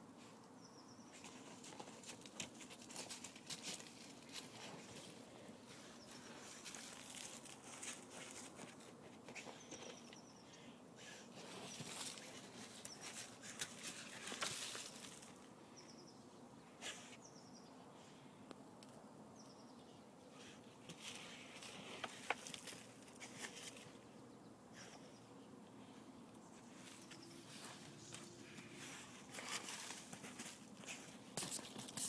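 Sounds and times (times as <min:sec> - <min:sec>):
puppy paws scratching dirt: 0:01.0 - 0:10.4, 0:11.1 - 0:15.5, 0:20.3 - 0:24.2, 0:25.8 - 0:32.0.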